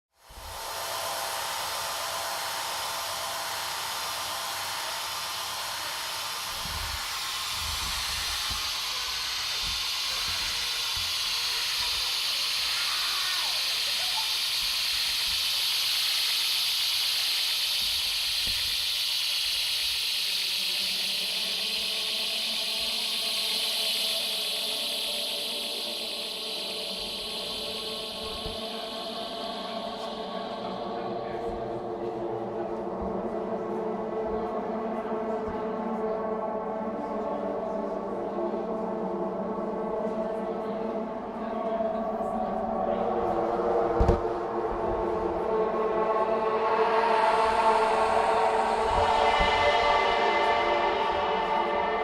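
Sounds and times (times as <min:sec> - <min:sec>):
dense wall of hiss: 0:00.2 - 0:52.0
low droning tones: 0:20.4 - 0:52.0.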